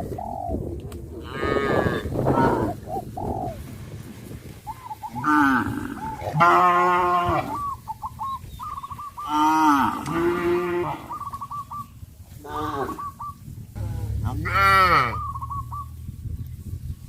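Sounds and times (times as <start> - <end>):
cattle mooing: 1.2 - 2.7, 5.2 - 7.6, 9.2 - 11.2, 12.4 - 13.1, 13.8 - 15.9.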